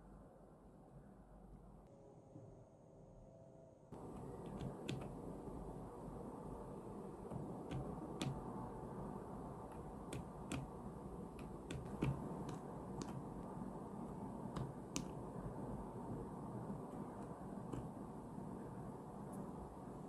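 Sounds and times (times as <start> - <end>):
soft keyboard key clicks: 4.1 - 5.2, 7.3 - 8.5, 9.7 - 10.7, 11.4 - 13.3, 14.5 - 15.2.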